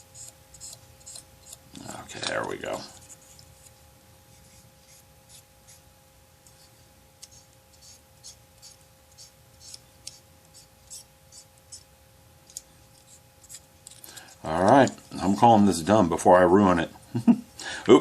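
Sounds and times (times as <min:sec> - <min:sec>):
faint electrical hum: 0:00.0 - 0:18.0
tool scratching on plastic: 0:00.2 - 0:05.8, 0:06.5 - 0:11.9.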